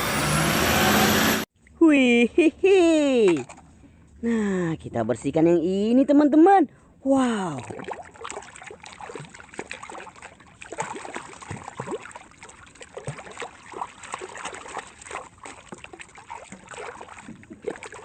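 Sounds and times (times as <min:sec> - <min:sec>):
water splashing in a basin: 0:03.2 - 0:03.7, 0:07.4 - 0:18.0.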